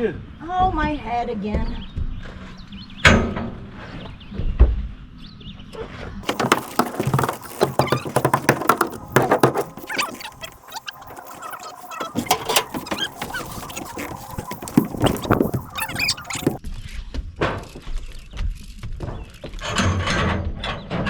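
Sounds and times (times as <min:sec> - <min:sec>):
dull thumps: 0:06.2 - 0:16.6
roofing materials crackling and clicking: 0:06.2 - 0:16.6.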